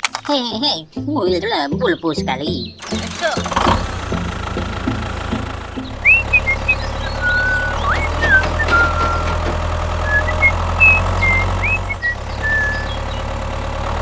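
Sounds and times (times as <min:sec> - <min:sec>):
birds chirping: 0:00.0 - 0:14.0
engine-like drone: 0:02.8 - 0:14.0.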